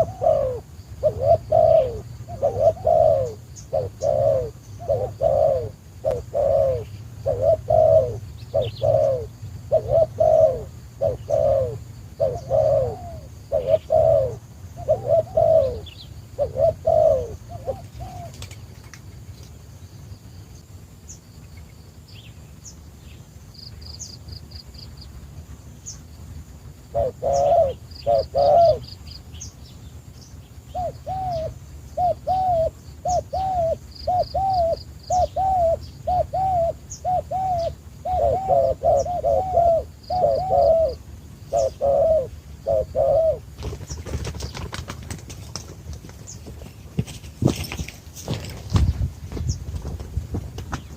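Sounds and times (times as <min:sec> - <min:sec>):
dove cooing: 0:00.0 - 0:18.8, 0:26.7 - 0:29.2, 0:30.6 - 0:46.7.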